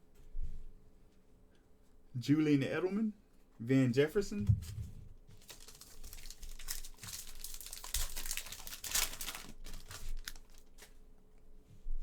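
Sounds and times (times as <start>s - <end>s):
wrapper crinkling and tearing: 5.4s - 11.0s.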